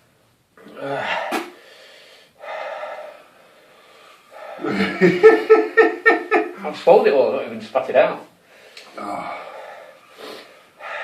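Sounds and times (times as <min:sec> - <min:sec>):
man gasping and blowing breaths: 0:00.7 - 0:05.0.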